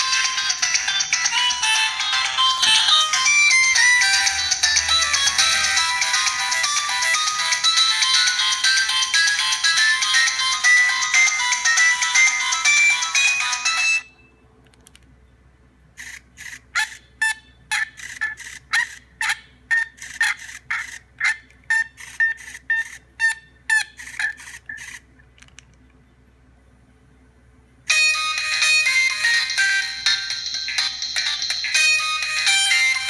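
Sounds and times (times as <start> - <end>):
mobile phone chirps: 0.0 - 14.3, 21.7 - 25.0, 27.9 - 33.0.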